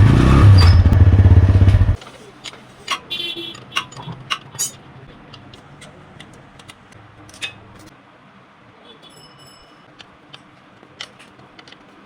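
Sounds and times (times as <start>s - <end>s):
motorcycle wheel clicking and ticking: 0.0s - 2.0s.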